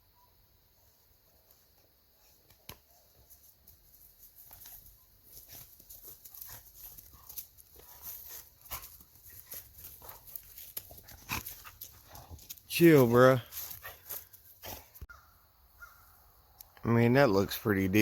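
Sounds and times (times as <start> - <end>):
rustling: 1.4 - 15.1.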